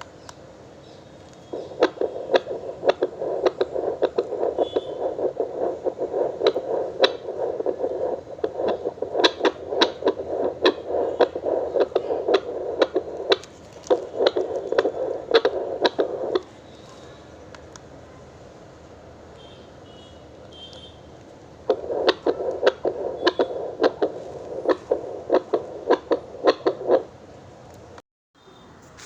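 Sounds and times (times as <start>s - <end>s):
crackling clicks: 1.2s - 17.9s, 20.4s - 28.0s
loudspeaker hissing: 1.5s - 17.4s, 21.0s - 27.1s.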